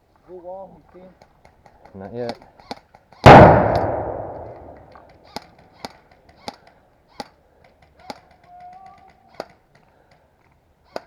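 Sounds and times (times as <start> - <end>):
airsoft gunshots: 3.3 - 4.9.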